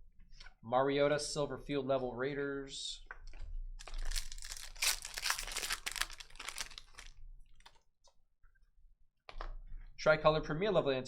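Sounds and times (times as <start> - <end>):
foil wrapper crinkling and ripping: 3.8 - 7.2.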